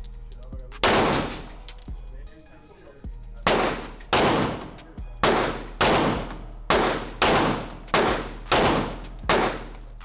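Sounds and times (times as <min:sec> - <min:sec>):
gunshots with echo: 0:00.8 - 0:01.7, 0:03.5 - 0:09.9.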